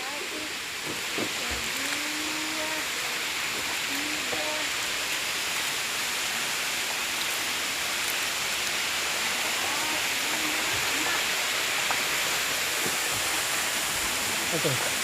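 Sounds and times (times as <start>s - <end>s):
waterfall hiss: 0.0s - 15.0s
faint voices: 1.2s - 4.7s, 9.2s - 11.5s.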